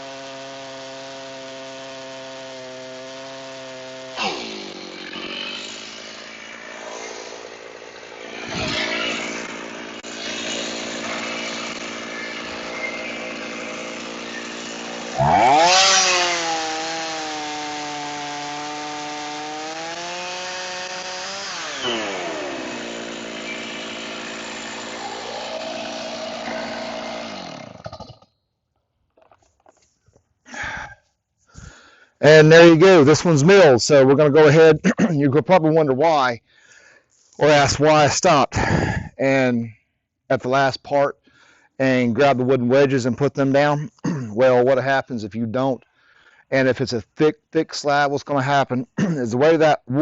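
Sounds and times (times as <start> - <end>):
chainsaw cutting log: 0.0 - 28.4, 37.4 - 39.1.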